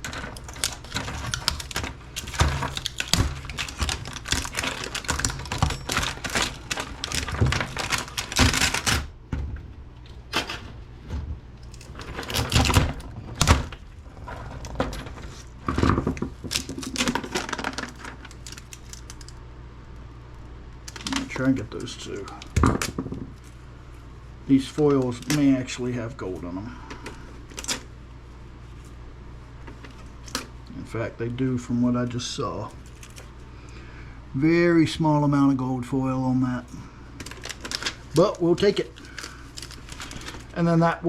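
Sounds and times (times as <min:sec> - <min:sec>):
plastic and metal parts clicking: 0:00.0 - 0:09.1, 0:14.6 - 0:19.4.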